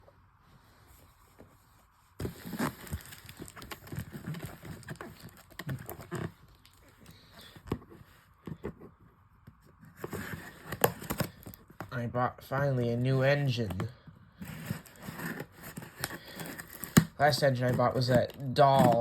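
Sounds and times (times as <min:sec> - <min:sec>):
objects handled near microphone: 0:00.5 - 0:11.9.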